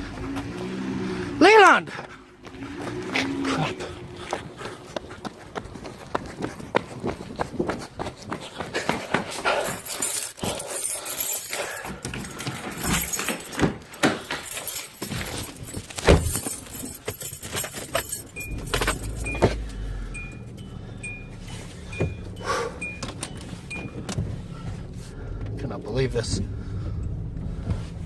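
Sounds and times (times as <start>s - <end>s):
car engine humming: 0.0s - 8.4s, 9.5s - 28.0s
keys jangling: 9.4s - 24.3s
dashboard warning chime: 16.3s - 24.8s.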